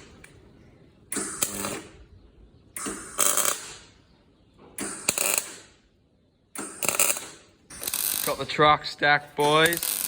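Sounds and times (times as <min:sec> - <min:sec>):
power tool rattly clicking bursts: 0:06.6 - 0:08.4.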